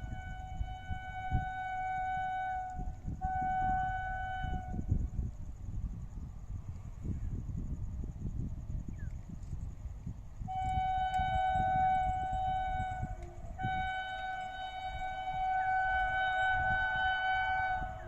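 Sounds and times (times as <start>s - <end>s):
locomotive air horn blasts: 0.0s - 5.2s, 10.5s - 18.0s.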